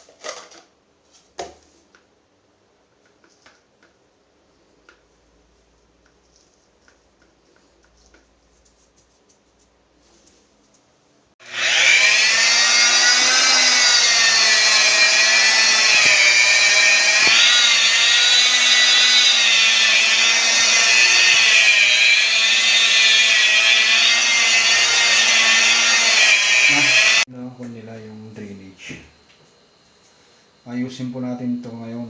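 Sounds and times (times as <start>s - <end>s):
power tool motor whine: 11.4s - 27.3s.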